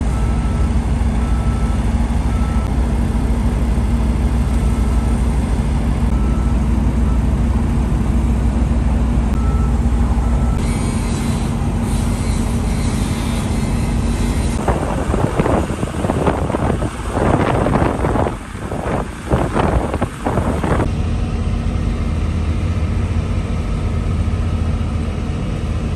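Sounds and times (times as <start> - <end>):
welding machine humming: 9.4 - 20.8.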